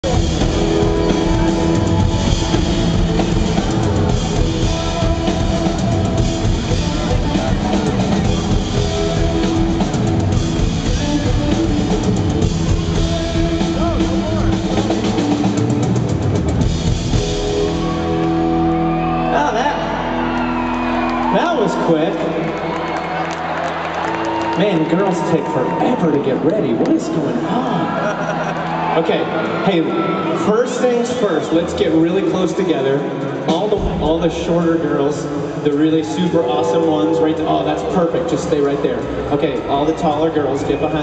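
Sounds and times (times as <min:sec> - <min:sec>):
drum kit: 0:00.0 - 0:23.2, 0:33.5 - 0:35.8
rock band playing: 0:00.0 - 0:41.0
guitar chords ringing: 0:16.8 - 0:21.1.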